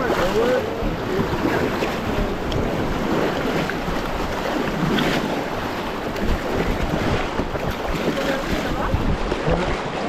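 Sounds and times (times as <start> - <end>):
river water rushing and splashing: 0.0 - 10.0
wind buffeting microphone: 0.0 - 10.0.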